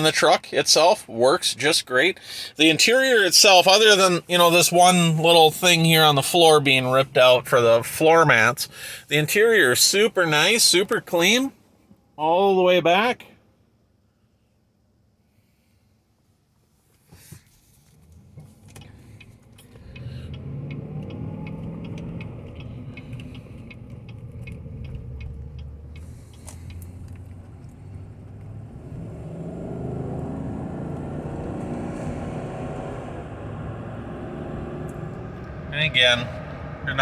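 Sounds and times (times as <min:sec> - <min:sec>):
road noise: 0:00.0 - 0:11.7, 0:17.0 - 0:37.0
car engine from inside cabin: 0:02.6 - 0:11.5, 0:17.2 - 0:37.0
light ticks: 0:18.1 - 0:28.6.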